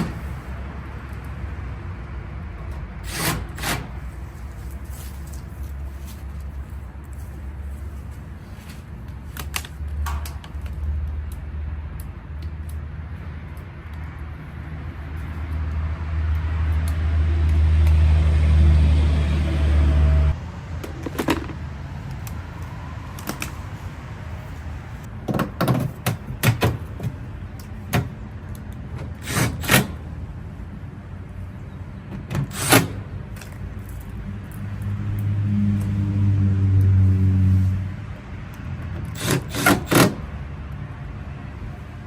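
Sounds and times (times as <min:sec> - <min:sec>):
low motor hum: 0:15.7 - 0:25.0.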